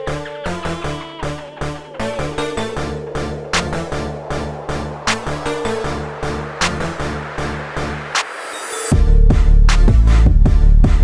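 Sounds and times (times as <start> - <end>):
electronic music with beat: 0.0 - 11.0
sweeping hit: 2.4 - 9.5.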